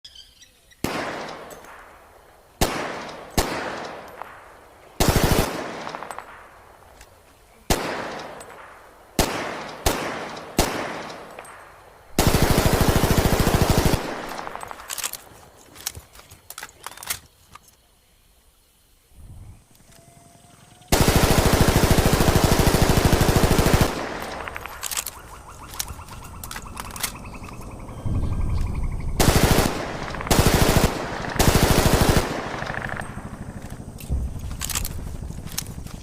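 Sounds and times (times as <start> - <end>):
submachine gun firing: 0.8 - 2.0, 2.6 - 6.6, 7.7 - 11.6, 12.2 - 15.1, 20.9 - 25.2, 29.2 - 36.0
quiet sharp cracks: 0.8 - 11.9, 23.8 - 27.6, 29.6 - 31.5.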